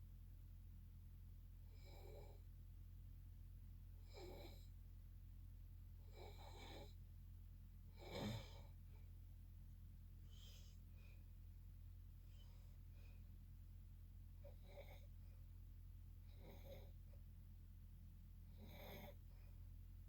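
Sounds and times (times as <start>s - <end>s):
person snoring faintly: 4.0s - 4.7s, 8.0s - 8.7s, 14.4s - 15.1s, 16.3s - 17.0s, 18.5s - 19.2s.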